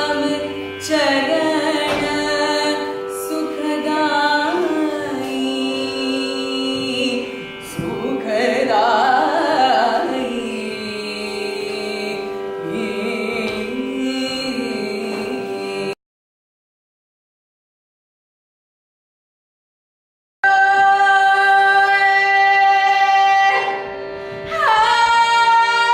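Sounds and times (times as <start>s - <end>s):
person singing devotional song: 0.0s - 16.0s, 20.4s - 23.8s.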